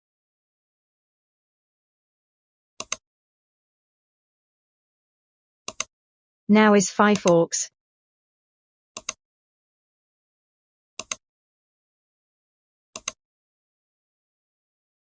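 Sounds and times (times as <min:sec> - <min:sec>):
computer mouse clicks: 0:02.8 - 0:03.0, 0:05.7 - 0:05.9, 0:11.0 - 0:11.2, 0:13.0 - 0:13.2.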